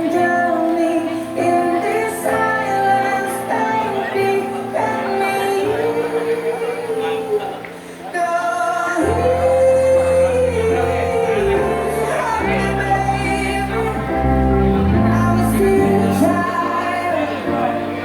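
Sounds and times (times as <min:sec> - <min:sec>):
wavering vocal line: 0:00.0 - 0:18.0
sustained bass and chords: 0:09.1 - 0:18.0.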